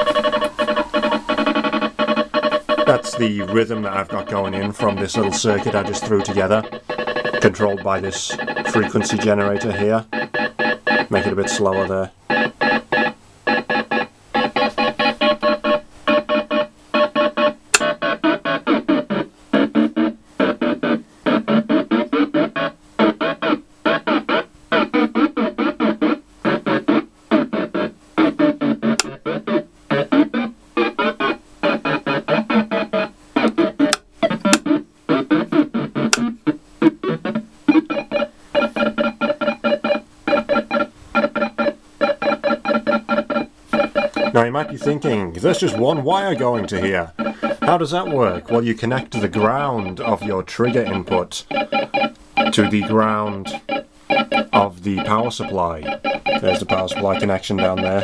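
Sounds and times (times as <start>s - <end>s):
pulsing buzzy electronic tones: 0.0s - 58.0s.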